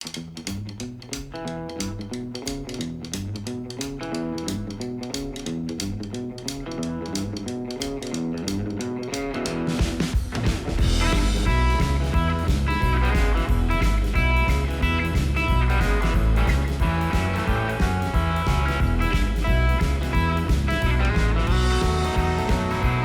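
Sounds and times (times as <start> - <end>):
guitar music over a beat: 0.0 - 10.0, 10.8 - 23.0.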